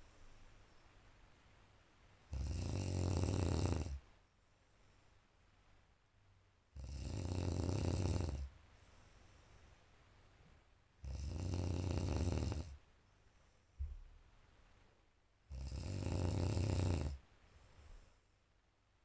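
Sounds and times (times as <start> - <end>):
quiet breathing: 0.0 - 6.0, 6.7 - 18.5
person snoring loudly: 2.3 - 4.0, 6.8 - 8.5, 11.0 - 12.8, 15.5 - 17.2.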